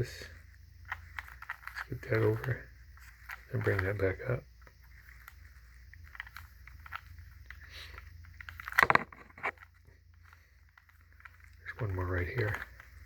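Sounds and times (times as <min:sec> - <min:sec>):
plastic cube layers clicking: 0:00.4 - 0:13.0
loud plastic clack: 0:08.6 - 0:09.6.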